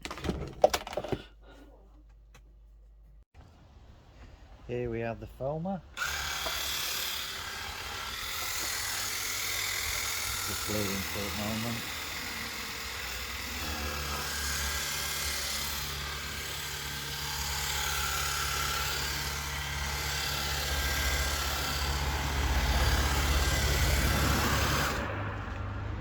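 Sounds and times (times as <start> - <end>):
pump motor running: 6.0 - 25.1.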